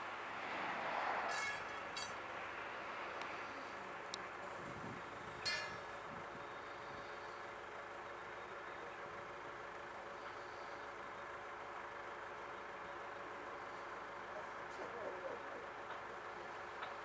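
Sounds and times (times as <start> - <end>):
engine running: 0.0 - 17.0
metal clang: 1.3 - 2.3, 5.4 - 6.0.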